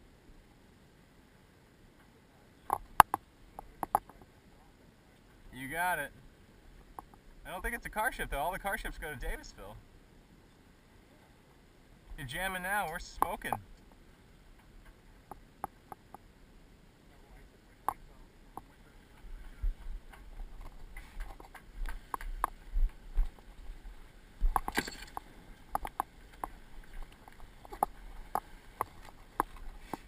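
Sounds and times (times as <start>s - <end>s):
sharp clicks and knocks: 2.7s - 4.3s, 24.4s - 30.0s.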